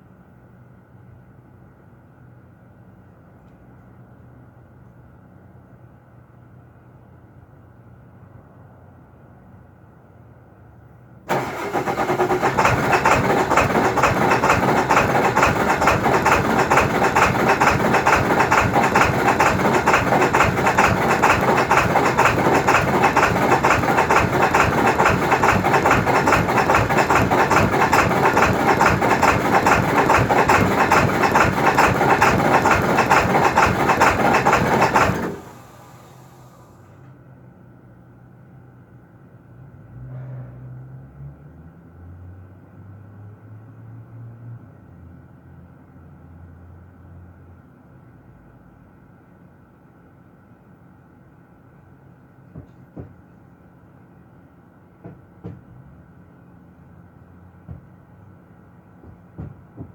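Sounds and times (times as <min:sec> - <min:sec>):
diesel engine cranking: 0:11.3 - 0:36.8.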